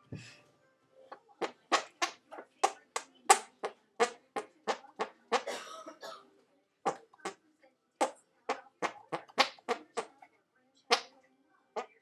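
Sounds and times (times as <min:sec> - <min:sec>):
fart noises: 0:01.4 - 0:05.5, 0:08.0 - 0:10.1.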